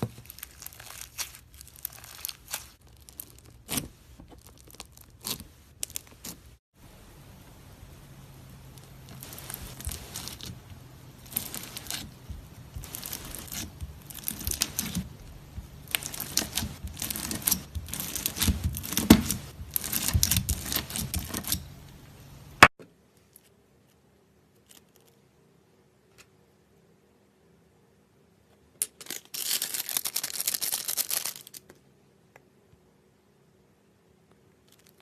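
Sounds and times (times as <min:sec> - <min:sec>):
slime crackling and crinkling: 0:00.0 - 0:06.6, 0:07.8 - 0:22.7, 0:29.0 - 0:31.7, 0:34.6 - 0:35.0.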